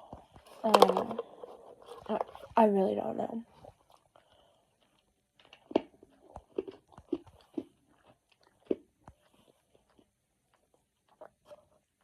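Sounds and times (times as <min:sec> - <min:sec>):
tablet crunching while chewing: 0:03.6 - 0:12.0.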